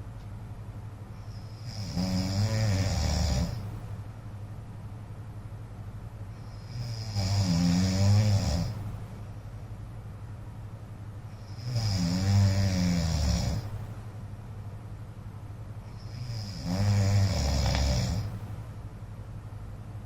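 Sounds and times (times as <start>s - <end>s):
steady low hum: 0.0s - 20.0s
man snoring: 1.5s - 3.7s, 6.6s - 8.8s, 11.5s - 13.8s, 16.0s - 18.4s.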